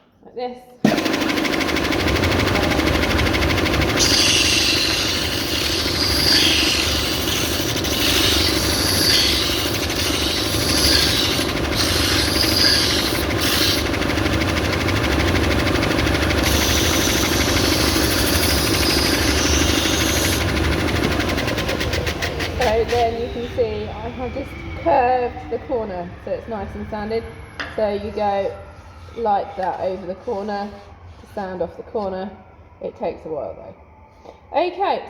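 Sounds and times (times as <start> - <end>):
belt sander motor hum: 0.9 - 25.9
sandpaper hissing on wood: 4.0 - 13.8.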